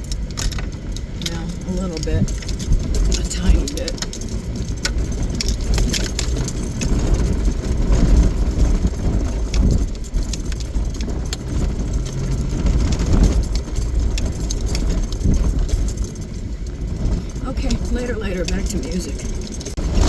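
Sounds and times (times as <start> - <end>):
cab clicks and rattles: 0.0 - 20.0
engine and tyre rumble: 0.0 - 20.0.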